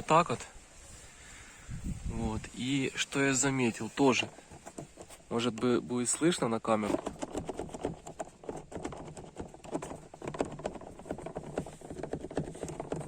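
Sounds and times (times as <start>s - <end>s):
plastic trim clicking and rattling: 4.2s - 13.0s.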